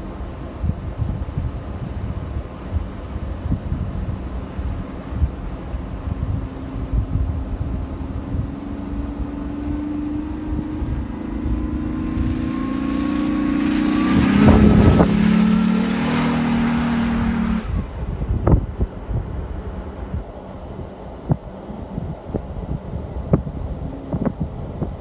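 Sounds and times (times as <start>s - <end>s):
car engine pulling: 0.0s - 25.0s
water and mud spray rushing: 0.0s - 25.0s
wind buffeting microphone: 0.0s - 25.0s.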